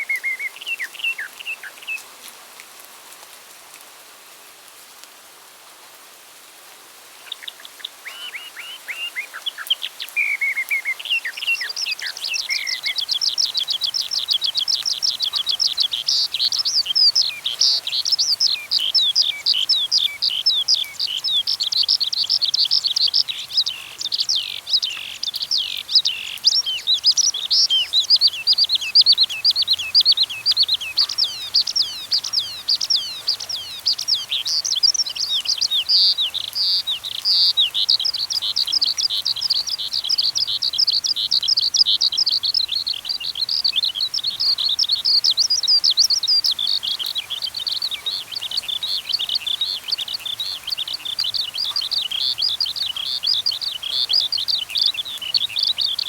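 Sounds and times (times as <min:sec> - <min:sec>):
lower bird calls: 0:00.0 - 0:02.0, 0:07.2 - 0:56.0
birds chirping: 0:07.2 - 0:56.0.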